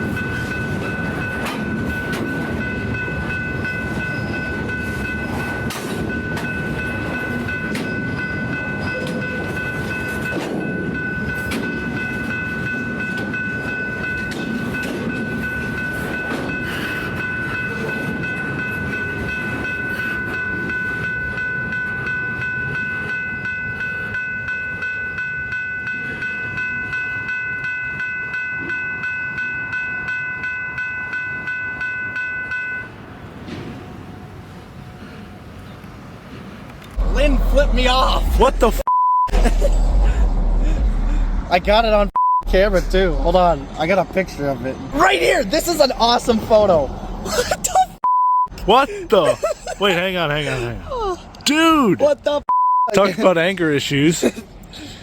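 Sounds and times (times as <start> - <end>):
freight train rumbling past: 0.0 - 26.9, 32.9 - 47.8.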